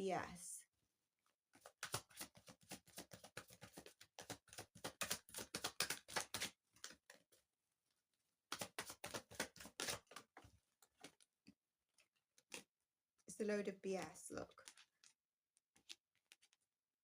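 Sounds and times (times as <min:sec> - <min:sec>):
cards being shuffled: 0:01.6 - 0:07.2, 0:08.5 - 0:11.2, 0:15.8 - 0:16.6.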